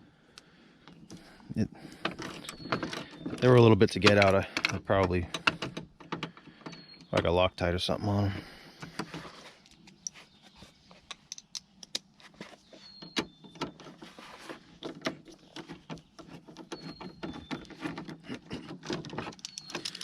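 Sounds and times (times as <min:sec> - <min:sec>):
screwdriver clicks and metallic taps: 0:04.0 - 0:05.6, 0:11.1 - 0:12.1
faint squeaks: 0:12.2 - 0:20.0.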